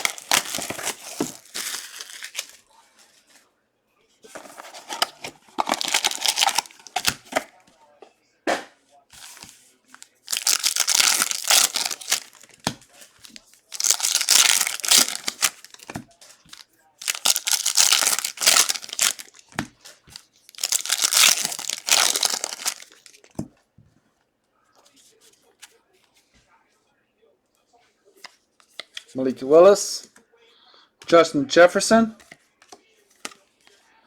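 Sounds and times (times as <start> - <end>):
plastic wrapping tearing and crinkling: 0.0 - 2.6, 4.4 - 7.5, 9.2 - 19.6, 20.5 - 23.3.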